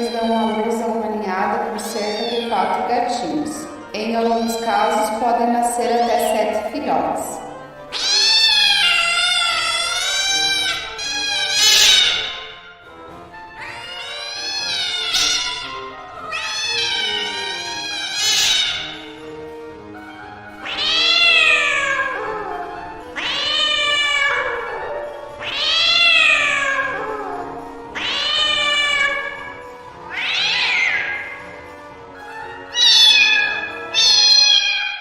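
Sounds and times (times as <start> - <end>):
cat meowing: 1.7 - 5.1, 7.8 - 12.8, 13.5 - 19.3, 20.4 - 31.5, 32.6 - 35.0.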